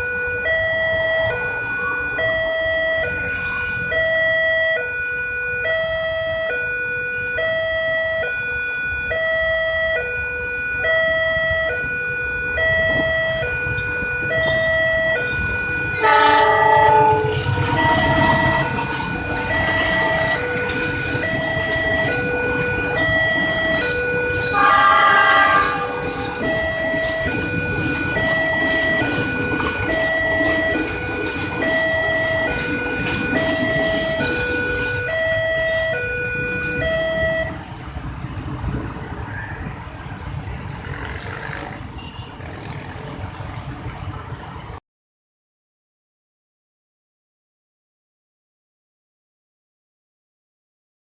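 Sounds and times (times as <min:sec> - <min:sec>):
train passing with rumble: 0:00.0 - 0:05.1, 0:10.9 - 0:44.8
level-crossing warning siren: 0:00.0 - 0:44.8
train horn blast: 0:15.4 - 0:36.9.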